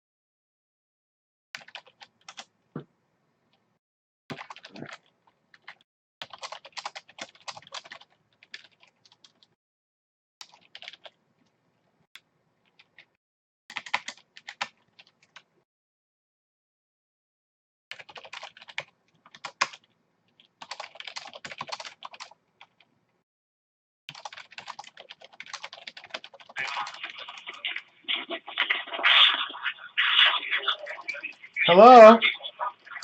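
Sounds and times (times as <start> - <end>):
keyboard typing: 1.6 - 2.5, 4.3 - 9.5, 10.4 - 11.2, 13.7 - 15.5, 17.9 - 22.9, 24.1 - 33.0.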